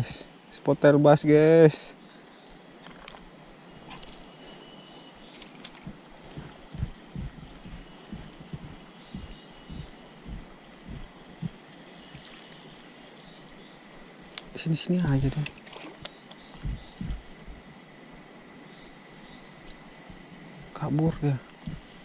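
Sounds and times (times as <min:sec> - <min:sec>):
insect chirring: 0:00.0 - 0:22.0
soft low thumps: 0:05.8 - 0:12.4, 0:16.5 - 0:17.7, 0:21.6 - 0:22.0.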